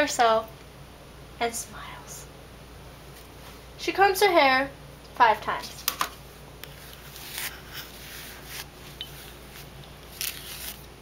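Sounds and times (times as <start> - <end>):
comb brushing through hair: 6.7 - 10.9.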